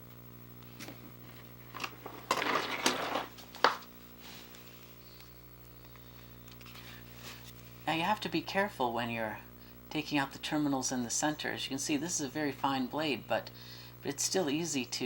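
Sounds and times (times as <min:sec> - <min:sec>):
low electrical hum: 0:00.0 - 0:15.0
rustling scrape: 0:02.0 - 0:05.0, 0:06.6 - 0:07.8.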